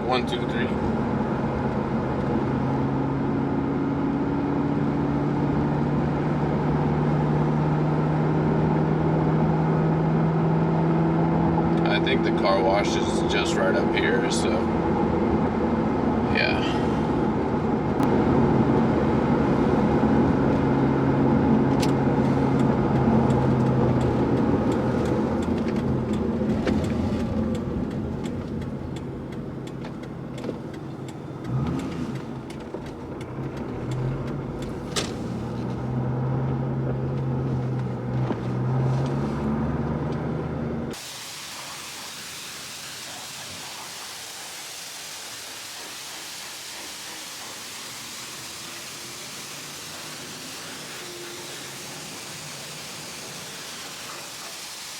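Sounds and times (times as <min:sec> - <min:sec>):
engine revving: 0:00.0 - 0:41.0, 0:44.7 - 0:54.9
car engine drone: 0:00.0 - 0:54.9
road noise: 0:00.0 - 0:54.9
steady hiss: 0:41.0 - 0:54.9.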